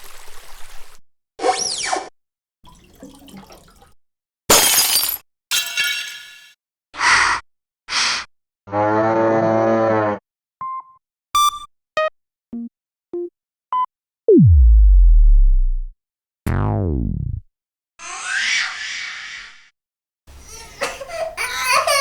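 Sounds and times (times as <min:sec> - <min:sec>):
buzzy synth tone: 0:14.3 - 0:15.9
deep tone dropping to rumble: 0:14.3 - 0:15.9, 0:16.5 - 0:17.5
falling-pitch sweep: 0:14.3 - 0:15.9.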